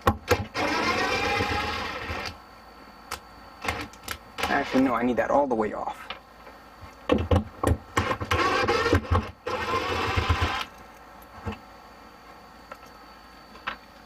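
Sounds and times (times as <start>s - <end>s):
cordless drill motor: 0.3s - 2.4s, 3.6s - 4.9s, 8.0s - 10.7s.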